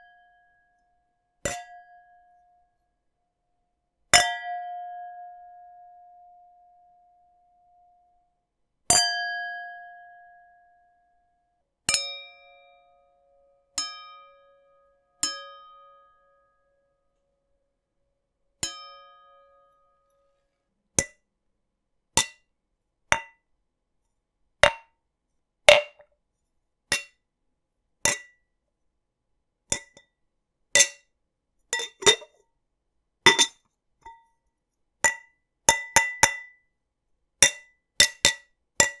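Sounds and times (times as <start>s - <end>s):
sharp glass clinks: 31.8s - 32.3s.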